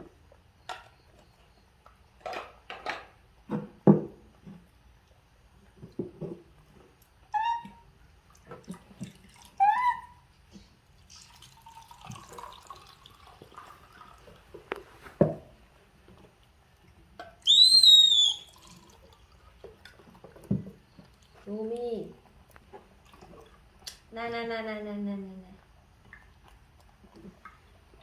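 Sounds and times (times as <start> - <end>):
monkey squealing: 9.6 - 10.2.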